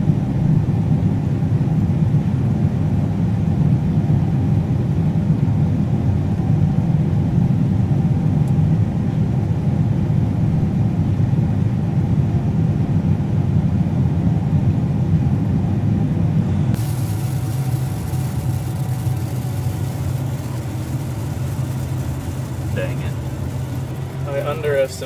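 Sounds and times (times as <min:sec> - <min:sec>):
combine harvester running: 0:14.0 - 0:25.0.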